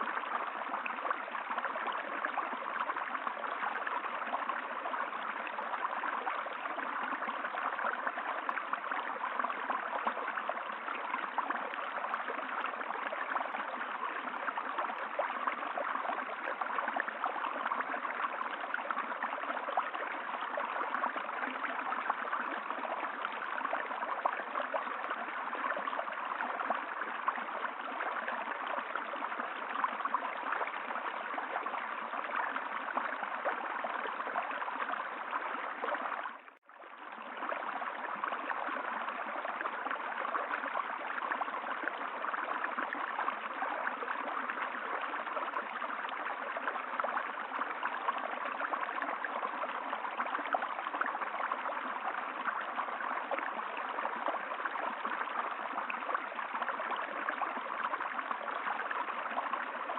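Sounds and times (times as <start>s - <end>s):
stream flowing: 0.0s - 59.9s.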